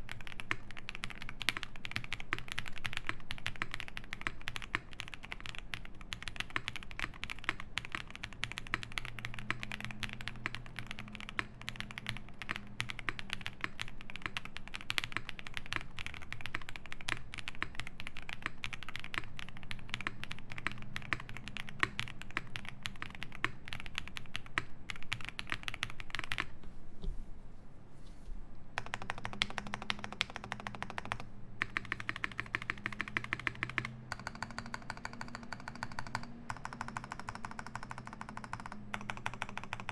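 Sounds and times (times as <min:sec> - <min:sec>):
mechanical keyboard typing: 0:00.0 - 0:26.6, 0:28.8 - 0:39.9.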